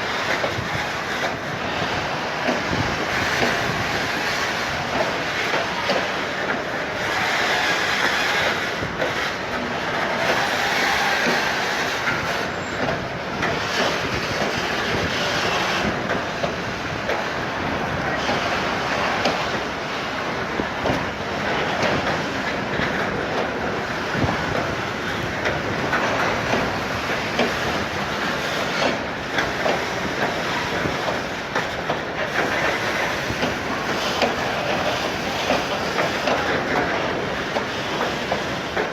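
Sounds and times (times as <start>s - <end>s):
train rolling rush: 0.0s - 38.9s
train wheels clacking on rail joints: 0.0s - 38.9s
wheel squeal: 10.4s - 12.9s.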